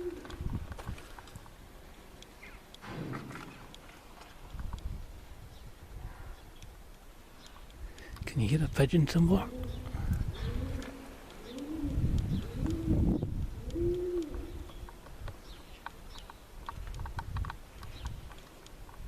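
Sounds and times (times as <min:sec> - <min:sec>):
pigeon cooing: 0:00.0 - 0:00.4, 0:09.4 - 0:14.7.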